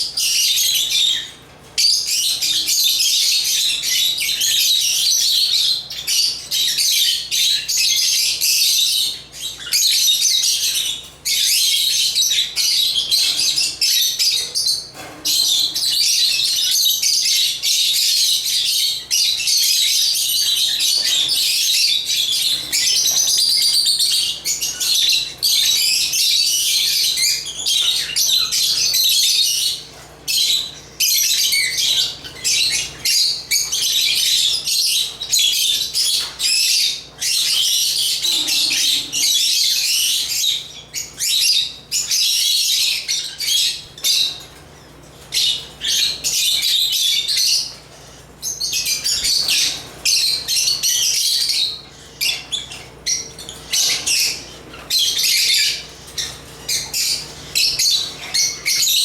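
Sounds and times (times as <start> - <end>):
lovebirds chirping: 0.0 - 59.0.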